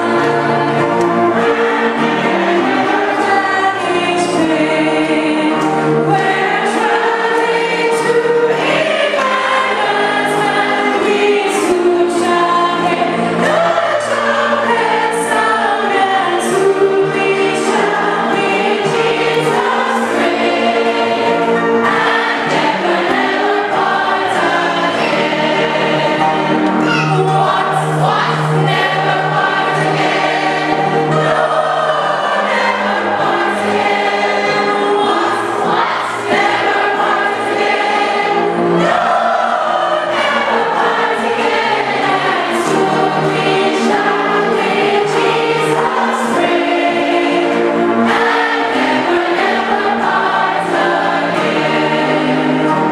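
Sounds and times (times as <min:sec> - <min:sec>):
congregation singing a hymn: 0:00.0 - 0:52.9
instrumental accompaniment: 0:00.0 - 0:52.9.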